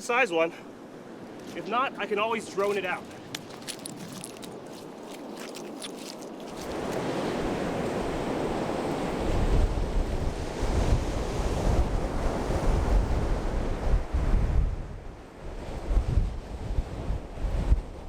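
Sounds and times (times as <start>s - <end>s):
surf washing onto beach: 4.6s - 14.5s
wind buffeting microphone: 6.6s - 18.0s.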